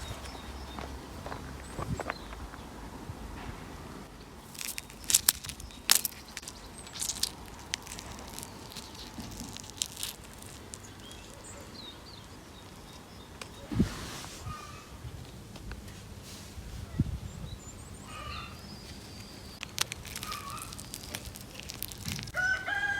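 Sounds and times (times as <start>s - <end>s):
fruit crushed by hand crackling: 4.4s - 11.5s, 19.5s - 22.5s.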